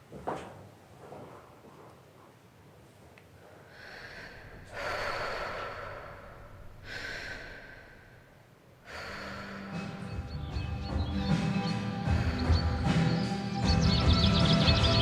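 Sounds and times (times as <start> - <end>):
person breathing loudly: 3.4 - 10.4, 11.3 - 13.5.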